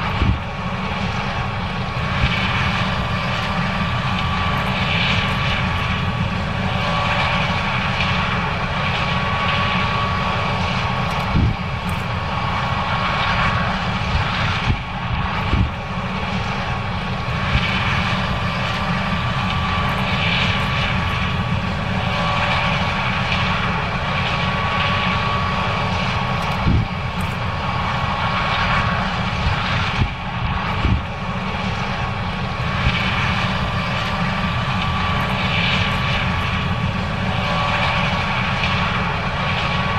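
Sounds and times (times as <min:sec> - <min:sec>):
combine engine and machinery: 0:00.0 - 0:39.9
thin steady whine: 0:00.0 - 0:39.9.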